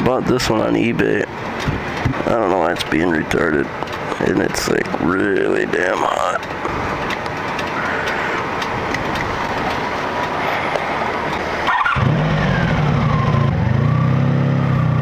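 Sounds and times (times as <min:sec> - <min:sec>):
motorcycle engine running rough: 0:10.6 - 0:15.0.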